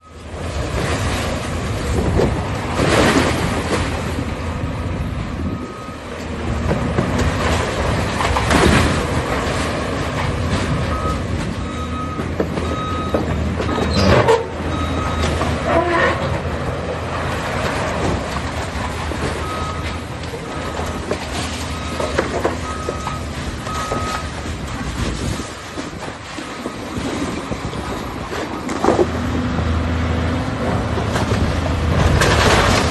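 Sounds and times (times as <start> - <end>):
demolition machinery rumbling: 0.0 - 32.9
reversing alarm beeping: 5.4 - 6.1, 10.8 - 14.1, 14.7 - 15.6, 19.4 - 24.4.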